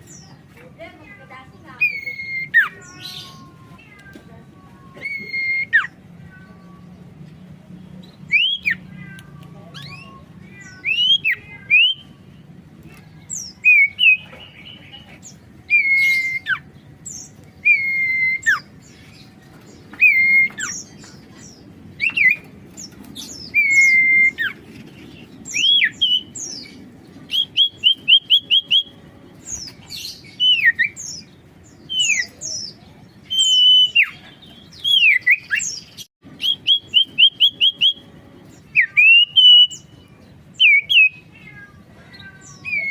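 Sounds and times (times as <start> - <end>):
bird singing whistled notes: 8.1 - 8.9, 9.8 - 12.2, 13.3 - 14.9, 15.7 - 18.9, 19.9 - 20.9, 23.2 - 24.6, 25.4 - 38.0, 38.6 - 41.3.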